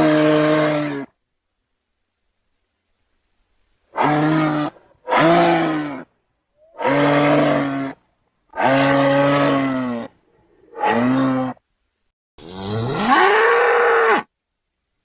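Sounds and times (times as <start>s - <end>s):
low lowing animal bellows: 12.4s - 14.3s.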